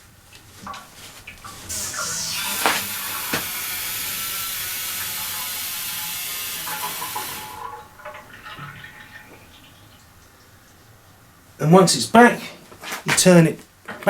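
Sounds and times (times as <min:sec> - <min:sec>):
hydraulic oil hissing: 0:00.6 - 0:11.7.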